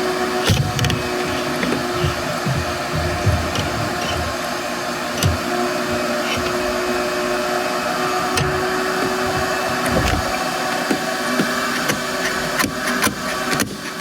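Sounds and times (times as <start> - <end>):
electric motor whining: 0.0 - 14.0
short knocks and clunks: 0.4 - 4.4, 8.3 - 13.8.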